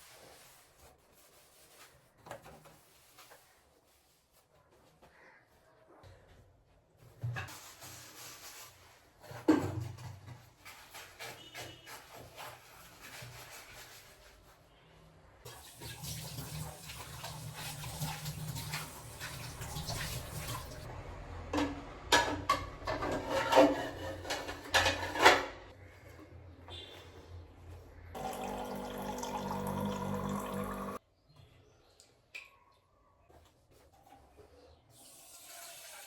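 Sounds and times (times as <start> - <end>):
water running from a tap: 15.5 - 20.9, 28.2 - 31.0, 35.0 - 36.0.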